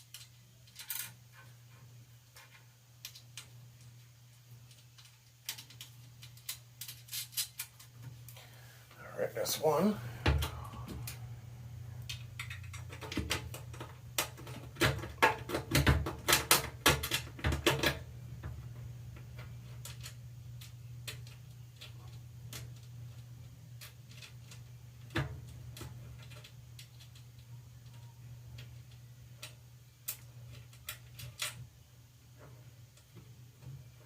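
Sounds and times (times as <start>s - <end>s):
steady low hum: 7.8s - 15.6s.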